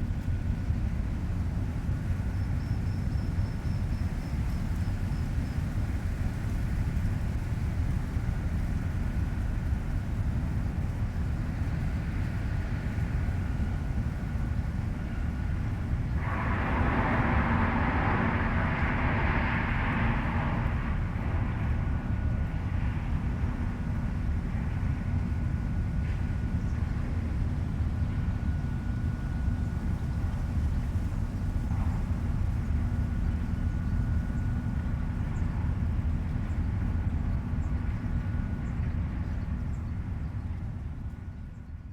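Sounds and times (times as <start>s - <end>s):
heavy machine engine rumbling: 4.0s - 41.7s
loud hiss: 16.1s - 22.2s.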